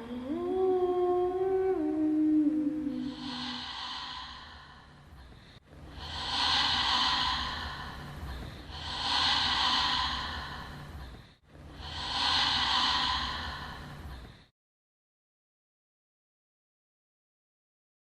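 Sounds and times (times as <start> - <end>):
heavy spooky breaths: 2.9 - 14.5.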